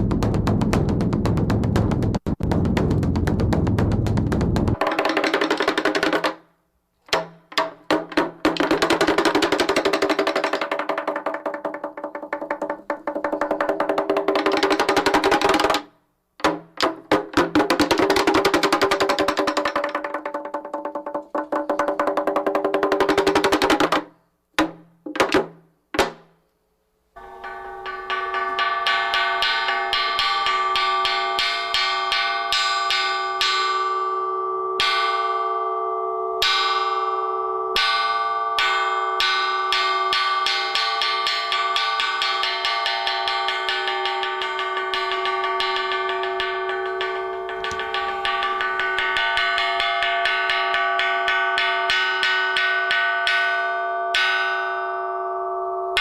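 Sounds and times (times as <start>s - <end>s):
hollow wooden knocks: 7.1s - 26.3s
bronze gong ringing: 27.2s - 33.7s, 45.0s - 52.1s.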